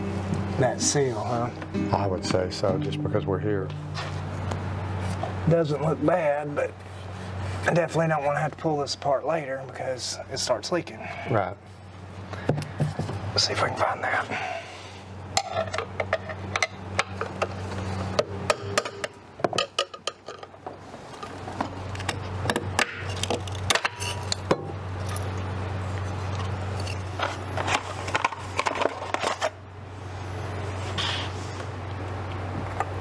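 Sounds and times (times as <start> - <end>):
steady low hum: 0.0 - 33.0
hand tools clinking and scraping: 3.7 - 8.5, 15.4 - 29.6.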